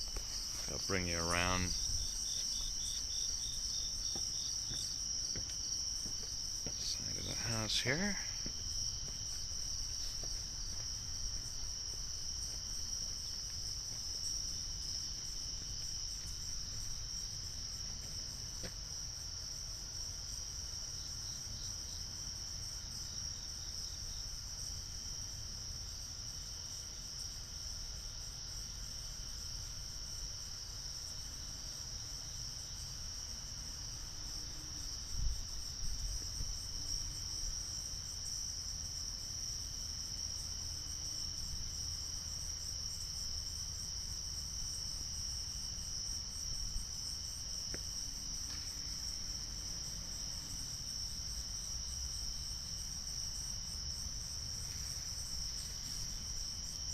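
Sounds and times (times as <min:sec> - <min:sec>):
night insects trilling: 0:00.0 - 0:56.9.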